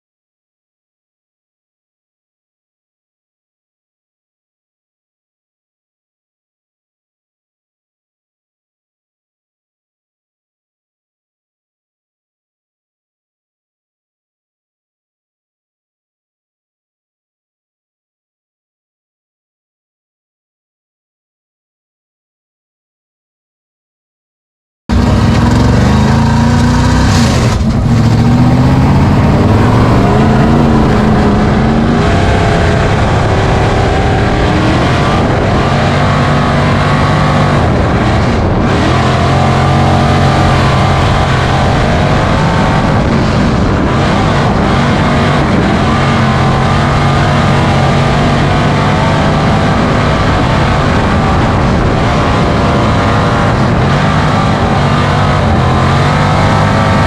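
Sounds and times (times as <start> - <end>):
race car engines running hard: 24.9 - 57.0.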